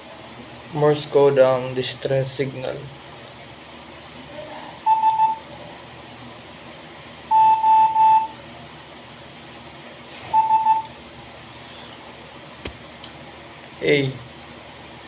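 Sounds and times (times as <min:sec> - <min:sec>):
morse code beeps: 0:04.9 - 0:05.4, 0:07.3 - 0:08.4, 0:10.3 - 0:10.9.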